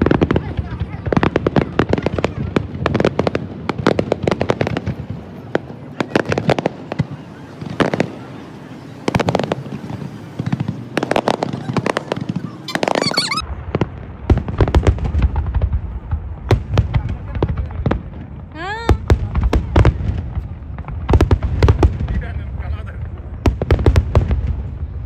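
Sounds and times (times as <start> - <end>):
fireworks crackling: 0.0 - 18.3
fireworks bangs and pops: 0.0 - 25.0
deep fireworks booms: 9.0 - 25.0.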